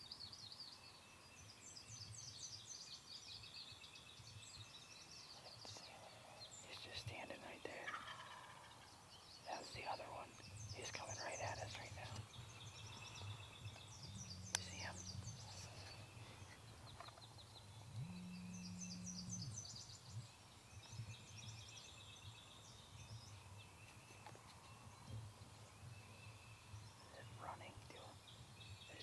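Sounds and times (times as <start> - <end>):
songbirds chirping and trilling: 0.0 - 29.0.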